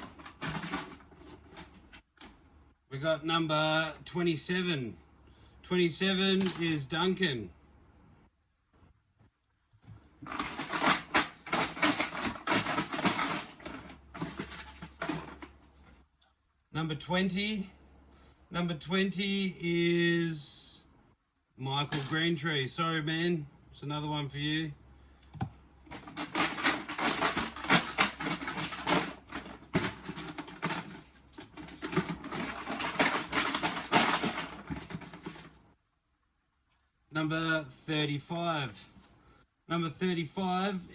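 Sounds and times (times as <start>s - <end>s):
tokens rattling in shaken container: 0.0s - 1.8s, 10.3s - 15.4s, 25.9s - 35.5s.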